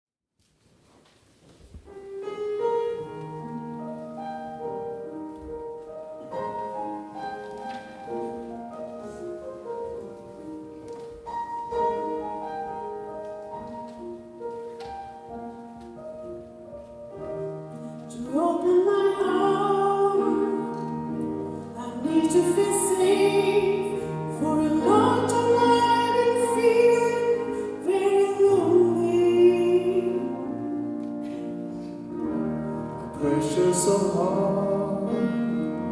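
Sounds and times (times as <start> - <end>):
slow piano chords: 0.9 - 35.9
person singing: 21.6 - 30.8, 33.0 - 35.9.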